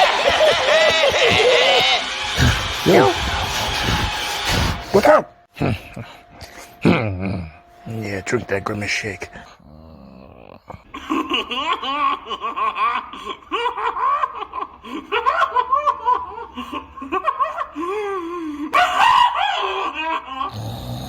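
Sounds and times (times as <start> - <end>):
warbling cartoon laughter: 0.0 - 5.0, 10.7 - 20.9
burst of noise: 0.0 - 5.1.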